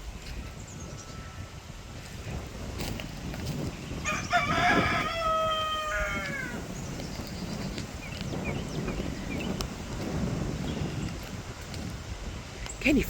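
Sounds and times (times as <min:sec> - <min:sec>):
wind rumble on microphone: 0:00.0 - 0:13.0
rooster crowing: 0:04.0 - 0:06.7.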